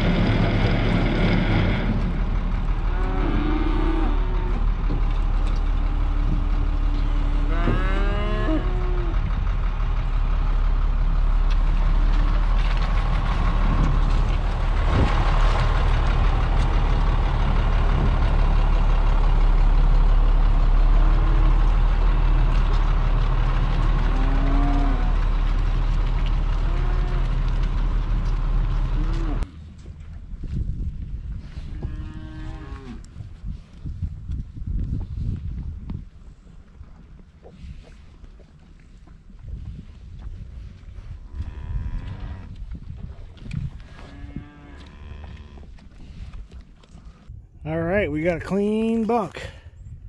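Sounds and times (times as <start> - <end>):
tractor engine running: 0.0 - 31.4
cattle mooing: 2.8 - 4.9, 6.8 - 9.3, 23.6 - 25.5, 26.4 - 27.6, 28.8 - 29.5, 31.8 - 33.1, 41.3 - 42.5, 43.8 - 45.7.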